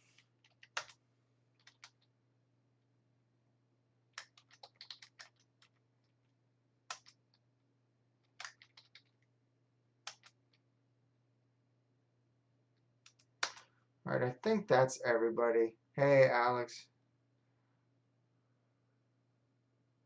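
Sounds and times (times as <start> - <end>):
keyboard typing: 0.1 - 1.0, 1.6 - 2.1, 4.2 - 6.1, 6.9 - 7.4, 8.2 - 9.2, 10.0 - 10.6, 13.0 - 13.7
low steady hum: 9.0 - 20.0.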